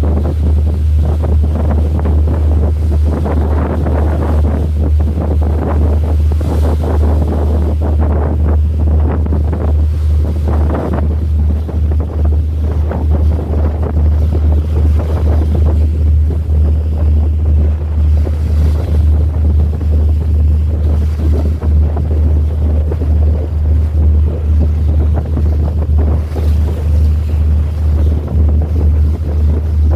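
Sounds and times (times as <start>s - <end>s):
sea water washing: 0.0s - 29.9s
wind buffeting microphone: 0.0s - 29.9s.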